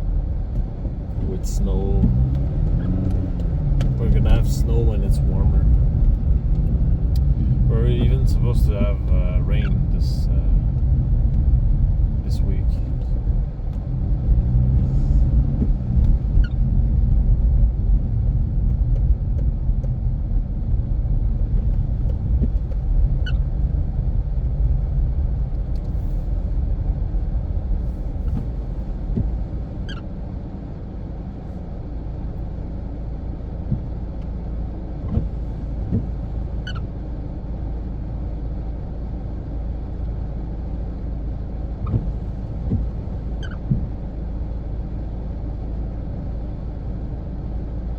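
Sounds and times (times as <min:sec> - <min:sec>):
car engine and tyre rumble: 0:00.0 - 0:47.9.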